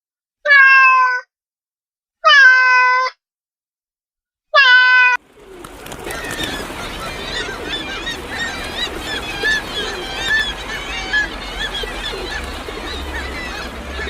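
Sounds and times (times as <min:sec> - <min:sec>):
birds chirping and chattering: 0:05.2 - 0:14.0.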